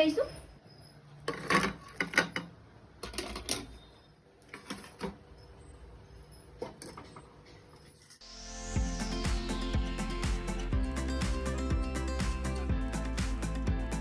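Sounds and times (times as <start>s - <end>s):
kitchen utensils clicking: 1.2s - 3.8s.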